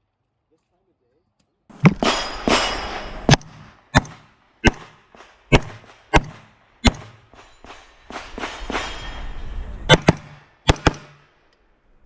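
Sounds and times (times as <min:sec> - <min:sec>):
rifle shots with echo: 0:01.8 - 0:09.0, 0:09.9 - 0:11.3.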